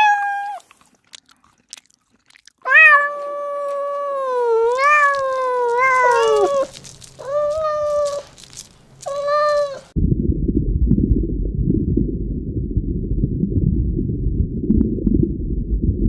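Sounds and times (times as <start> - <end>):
cat meowing: 0.0 - 0.7, 2.7 - 8.3, 9.0 - 9.9
low rumbling noise: 9.9 - 16.0.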